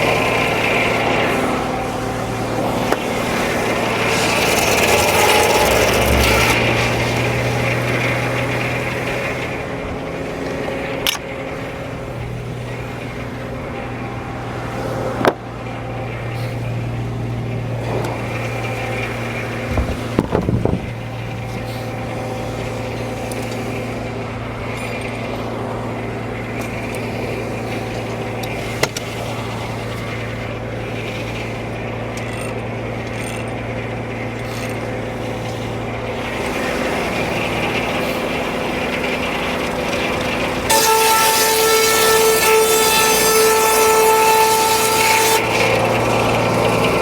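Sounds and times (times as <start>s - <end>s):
sawmill humming: 0.0s - 47.0s
clatter of knocks: 19.6s - 21.0s.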